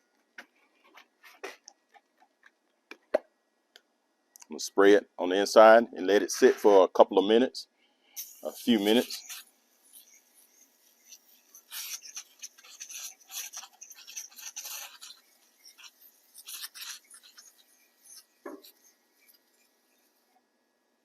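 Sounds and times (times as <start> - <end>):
aerosol can spraying: 8.2 - 20.2.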